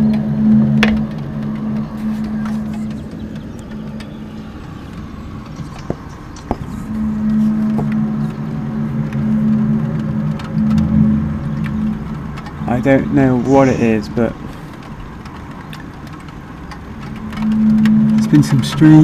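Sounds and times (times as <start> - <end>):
low droning hum: 0.0 - 19.0
faint clicks: 14.3 - 18.9.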